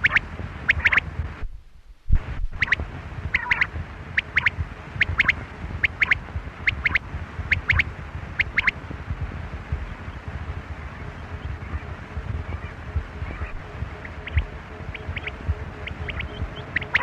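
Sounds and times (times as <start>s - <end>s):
low rumble: 0.0s - 17.0s
quail calling: 2.6s - 7.8s, 8.4s - 8.7s, 13.3s - 17.0s.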